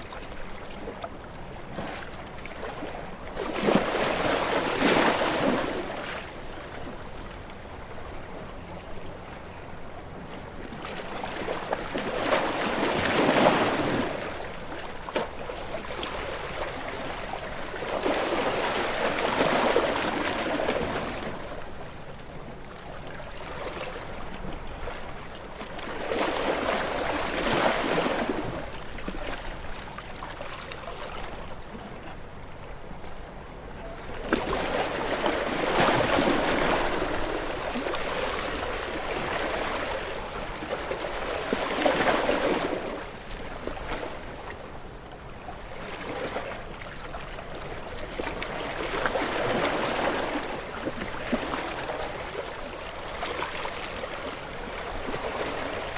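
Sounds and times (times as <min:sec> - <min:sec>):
waves breaking on rocky shore: 0:02.0 - 0:07.0, 0:34.1 - 0:44.8.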